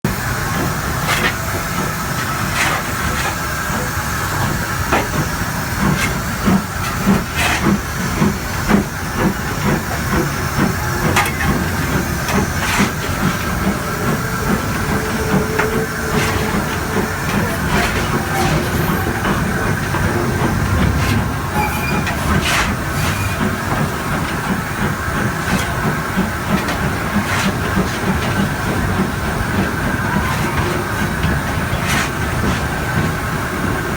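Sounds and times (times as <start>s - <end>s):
steam hissing: 0.1s - 33.9s
low rumble: 10.8s - 23.9s.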